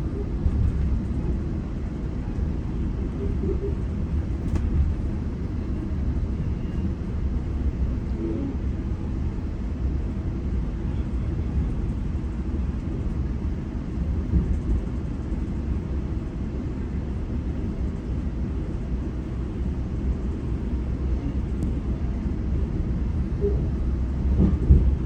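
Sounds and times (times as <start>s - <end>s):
train rumbling inside car: 0.0s - 25.0s
train bump: 23.4s - 25.0s.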